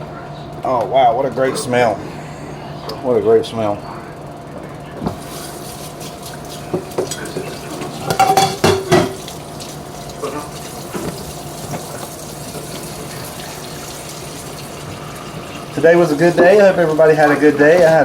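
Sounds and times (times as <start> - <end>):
steady low hum: 0.0 - 18.0
cookware clanking: 6.7 - 9.4.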